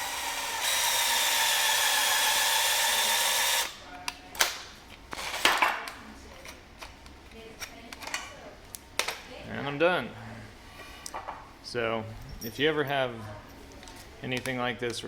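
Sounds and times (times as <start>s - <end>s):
power drill whining under load: 0.0s - 3.8s.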